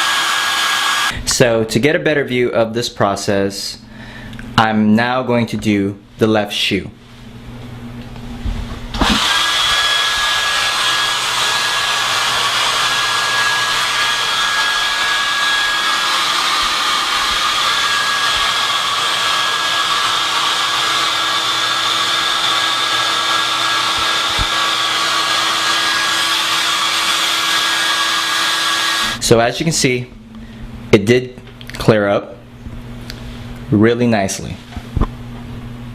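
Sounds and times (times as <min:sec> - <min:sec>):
hairdryer blowing: 0:00.0 - 0:01.2, 0:08.9 - 0:29.2.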